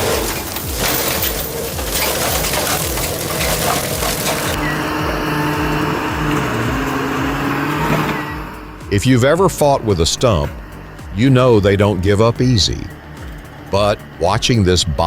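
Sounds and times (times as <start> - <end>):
wood and brush crunching: 0.0 - 4.7
heavy machinery engine running: 0.0 - 15.0.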